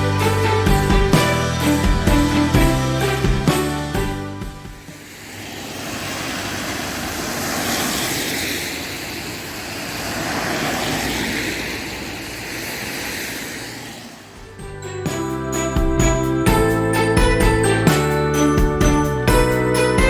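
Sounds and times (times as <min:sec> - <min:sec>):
vehicle whooshing roar: 0:04.7 - 0:14.9.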